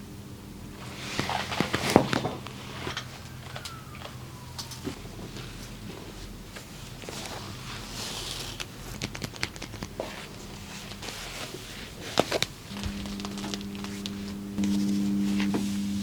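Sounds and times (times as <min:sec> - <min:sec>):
hands clicking and tapping on body: 0:08.9 - 0:10.1
low held musical tone: 0:12.7 - 0:16.0.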